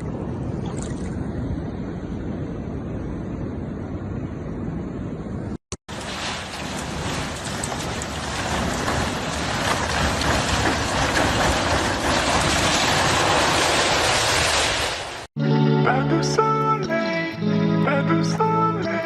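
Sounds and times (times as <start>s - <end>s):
steady rushing noise: 1.2s - 15.3s.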